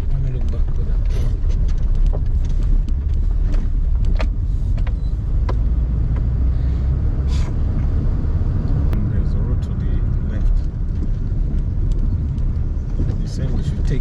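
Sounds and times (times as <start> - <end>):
light clicks and rattles: 0.0 - 6.3, 9.8 - 14.0
engine and tyre rumble: 0.0 - 14.0.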